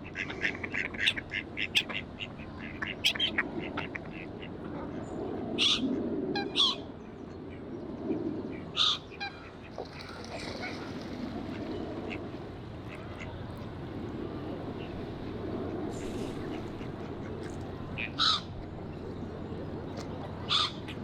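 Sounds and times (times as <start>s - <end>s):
ducks and waterbirds calling: 0.0s - 7.6s, 8.4s - 21.0s
steady low background noise: 0.0s - 21.0s
loud squawks: 5.6s - 6.8s, 8.7s - 10.9s, 18.0s - 18.5s, 20.4s - 21.0s.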